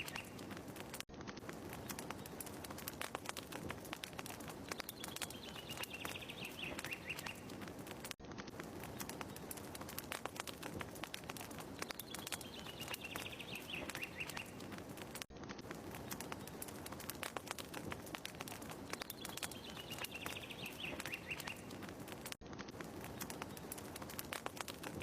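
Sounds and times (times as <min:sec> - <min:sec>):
wood fire crackling: 0:00.0 - 0:25.0
bird singing falling trill: 0:04.7 - 0:07.5, 0:11.8 - 0:14.6, 0:18.9 - 0:21.8.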